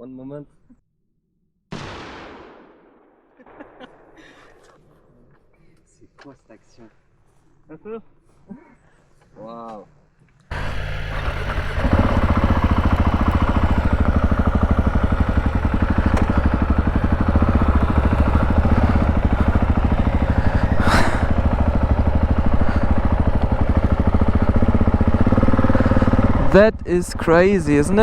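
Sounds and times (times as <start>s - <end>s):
motorcycle engine running: 10.5s - 28.0s.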